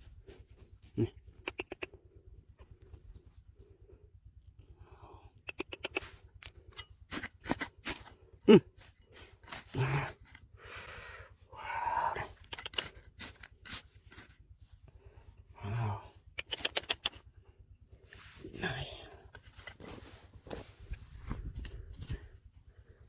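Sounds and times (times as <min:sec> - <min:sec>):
tool knocking against stones: 0:06.4 - 0:08.1, 0:12.4 - 0:14.3
scraping in gravel: 0:06.7 - 0:10.5, 0:12.4 - 0:14.4, 0:18.2 - 0:22.3.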